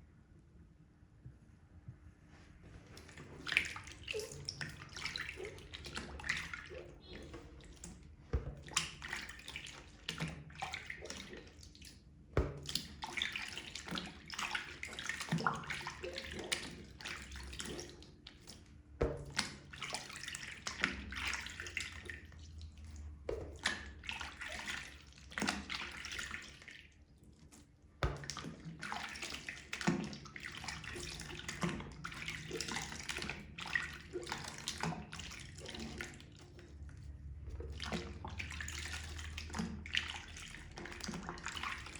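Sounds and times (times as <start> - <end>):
wet sponges squishing and splashing: 2.2 - 41.9.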